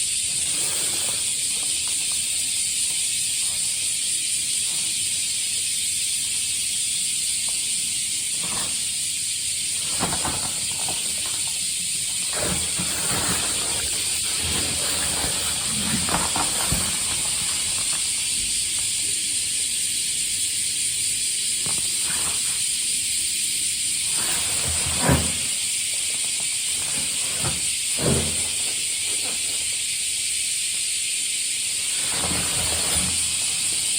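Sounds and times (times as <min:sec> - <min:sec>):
cicadas droning: 0:00.0 - 0:33.9
handling rustles and knocks: 0:09.8 - 0:18.2.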